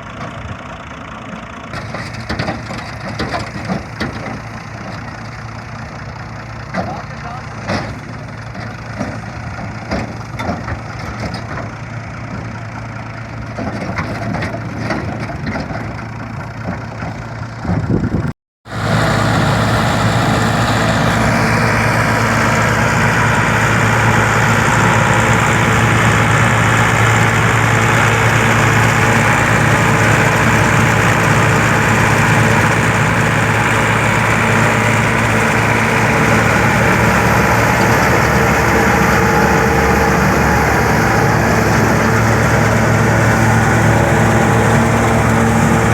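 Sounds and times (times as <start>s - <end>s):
diesel tractor engine knocking: 0.0s - 45.9s
straw blower rushing: 18.7s - 45.9s.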